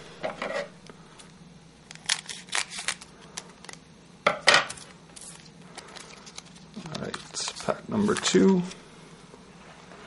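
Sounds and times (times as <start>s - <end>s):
wrapper being torn and crinkled: 1.8s - 3.8s.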